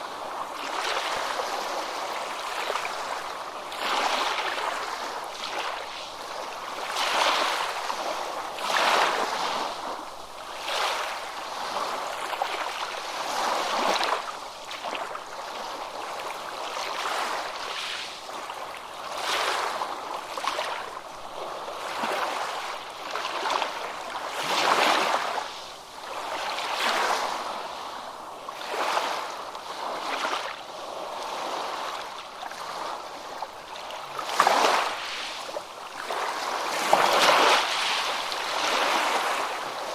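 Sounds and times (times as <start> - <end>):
ocean waves crashing: 34.0 - 39.9.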